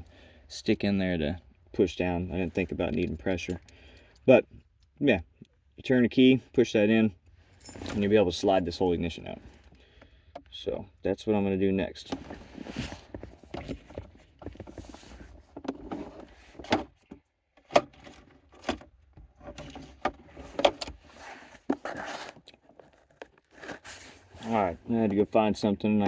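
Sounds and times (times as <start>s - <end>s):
rummaging clicks knocks and rustling: 7.6s - 8.2s, 12.1s - 25.3s.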